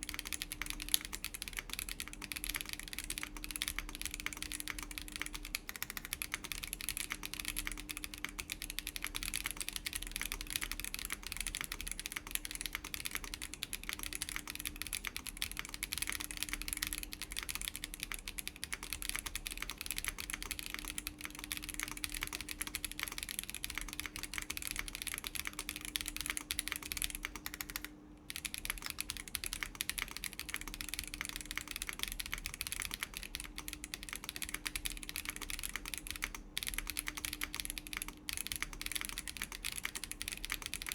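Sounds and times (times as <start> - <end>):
typing on mechanical keyboard: 0.0 - 40.9.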